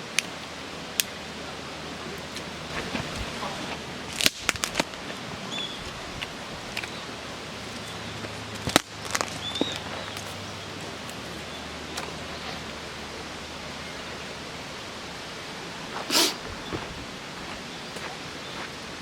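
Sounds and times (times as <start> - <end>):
wood campfire crackling: 2.2 - 10.3, 16.3 - 17.7.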